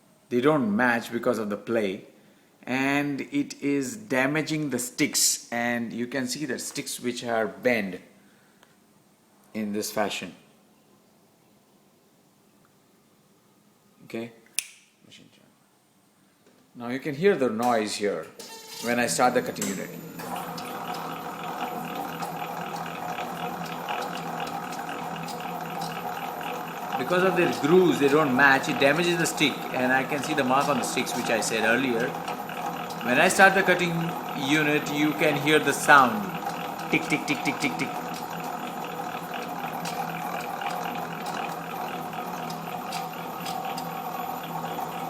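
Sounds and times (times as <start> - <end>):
cutting machine humming: 19.2 - 45.0
repeated ticking: 20.2 - 45.0.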